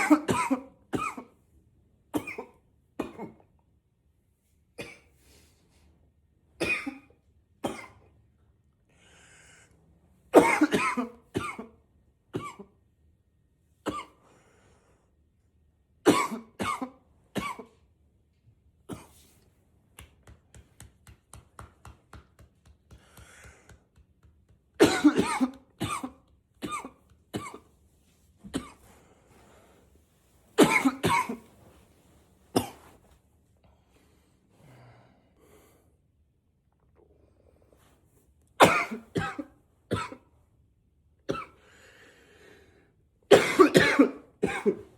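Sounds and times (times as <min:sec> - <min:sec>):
man coughing into a pillow: 0:00.0 - 0:01.4, 0:02.1 - 0:03.4, 0:06.6 - 0:08.1, 0:10.4 - 0:12.8, 0:13.8 - 0:14.2, 0:16.0 - 0:17.8, 0:18.9 - 0:19.2, 0:24.8 - 0:27.7, 0:28.4 - 0:28.9, 0:30.6 - 0:31.7, 0:32.6 - 0:33.0, 0:38.6 - 0:40.3, 0:41.3 - 0:41.6, 0:43.3 - 0:44.9.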